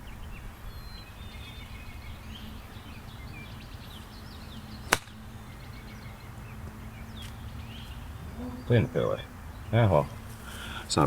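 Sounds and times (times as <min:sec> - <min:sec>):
wind rumbling on microphone: 0:00.0 - 0:10.3
birds chirping faintly: 0:00.0 - 0:11.0
golf club striking ball: 0:04.8 - 0:05.2.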